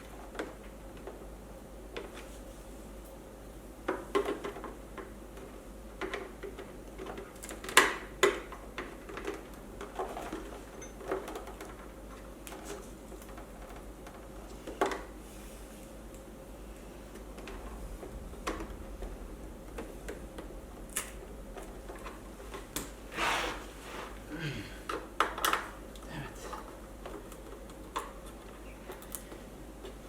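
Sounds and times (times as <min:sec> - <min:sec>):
small clicks and light knocks: 0:24.9 - 0:30.0.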